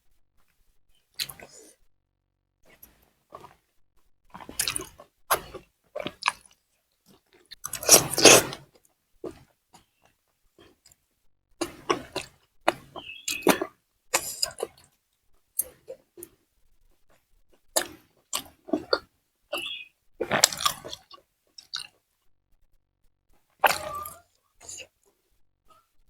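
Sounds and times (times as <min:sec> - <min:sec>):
person chewing and biting food: 0:04.3 - 0:08.7, 0:11.6 - 0:14.8, 0:17.8 - 0:19.1, 0:20.2 - 0:22.0.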